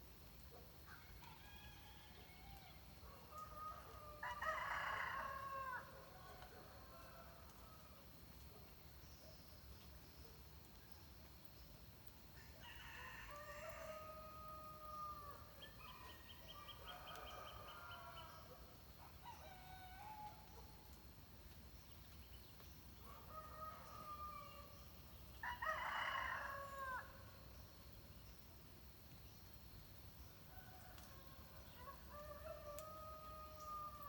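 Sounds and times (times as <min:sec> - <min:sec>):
faint rooster crowing: 0:00.9 - 0:08.0, 0:12.4 - 0:20.9, 0:23.0 - 0:24.8, 0:25.4 - 0:27.2, 0:30.5 - 0:34.0.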